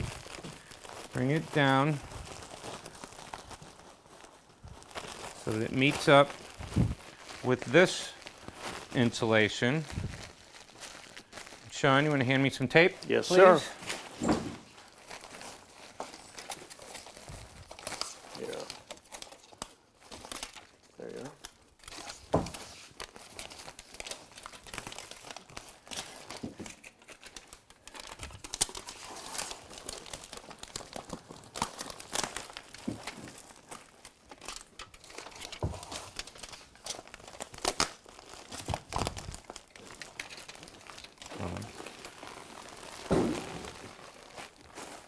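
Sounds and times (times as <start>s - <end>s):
foil tape crinkling: 0.0s - 45.0s
dull thump: 43.1s - 43.8s.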